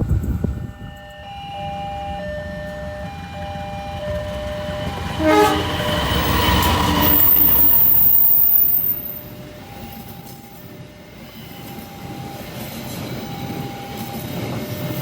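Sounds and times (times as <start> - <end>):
train rushing by: 0.0 - 15.0
train horn blasts: 5.0 - 6.8.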